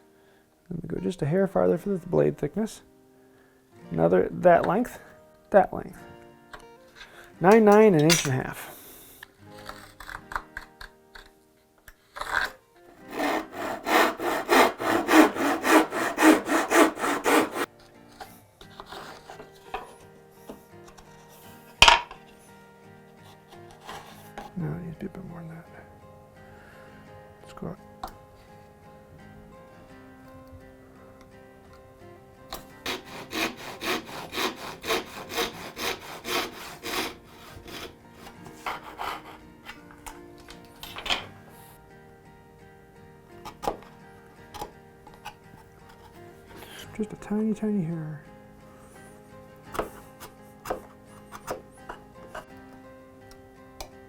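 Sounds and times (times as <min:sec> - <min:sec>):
hand saw cutting wood: 0:13.0 - 0:17.7, 0:18.6 - 0:20.0, 0:23.3 - 0:24.5, 0:32.5 - 0:39.9, 0:44.6 - 0:46.9, 0:49.7 - 0:52.5.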